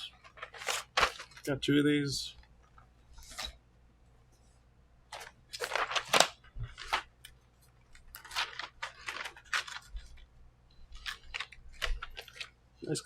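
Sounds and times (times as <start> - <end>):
plastic packaging crinkling: 0.1 - 1.6, 5.1 - 7.1, 7.9 - 10.3, 10.9 - 12.5.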